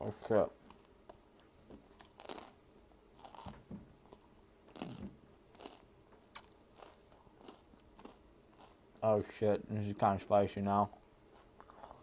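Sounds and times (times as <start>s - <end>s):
person chewing crunchy snacks: 1.9s - 9.0s.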